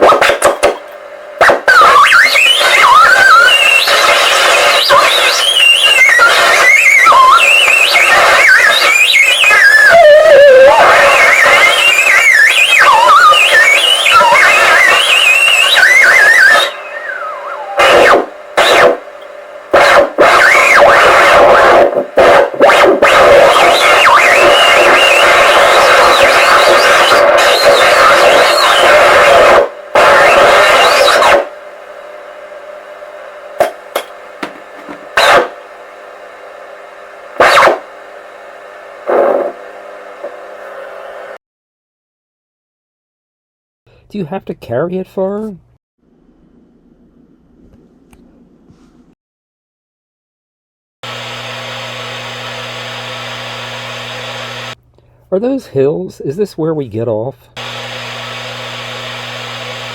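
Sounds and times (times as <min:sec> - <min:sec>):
radio static hum and hiss: 0:00.0 - 0:41.4
sharp static crackles: 0:01.4 - 0:19.0, 0:19.7 - 0:31.5, 0:35.1 - 0:35.6, 0:37.4 - 0:37.9
bursts of radio noise: 0:01.4 - 0:19.1, 0:19.7 - 0:31.5, 0:35.0 - 0:35.6, 0:37.4 - 0:37.8
held radio tones: 0:01.4 - 0:31.5, 0:34.6 - 0:35.6, 0:37.4 - 0:37.8
warbling whistle tones: 0:08.5 - 0:18.2.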